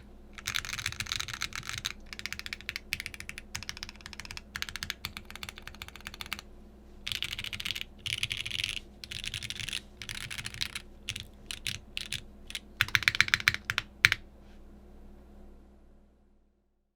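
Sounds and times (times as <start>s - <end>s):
mechanical keyboard typing: 0.0s - 6.4s, 7.1s - 14.2s.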